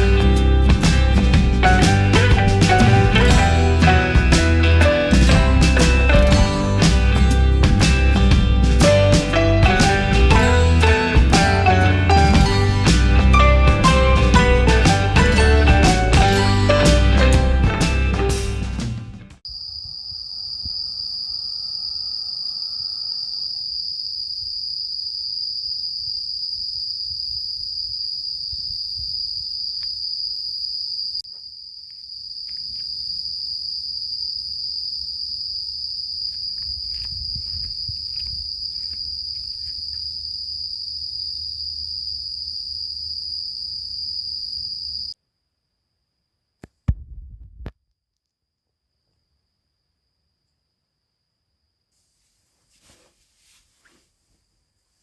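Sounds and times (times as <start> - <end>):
insects trilling: 19.4 - 45.2.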